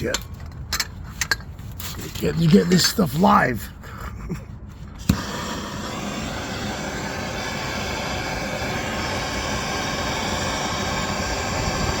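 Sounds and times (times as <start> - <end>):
gas torch lighting pop: 5.0 - 12.0
torch flame hissing: 5.0 - 12.0.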